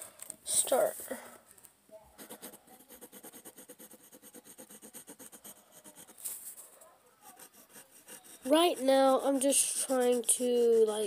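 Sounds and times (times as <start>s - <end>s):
pencil drawing strokes on paper: 2.2s - 11.0s.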